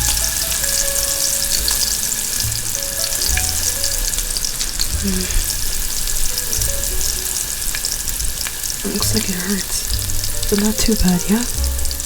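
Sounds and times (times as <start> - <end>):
vegetables sizzling in a frying pan: 0.0 - 12.0.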